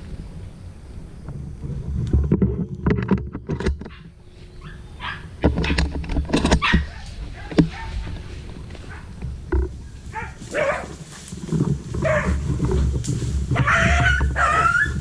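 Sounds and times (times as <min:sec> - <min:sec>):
rustling: 0:01.2 - 0:15.0
dogs barking and yelping: 0:03.8 - 0:09.2, 0:10.0 - 0:11.2, 0:12.0 - 0:12.6, 0:13.5 - 0:15.0.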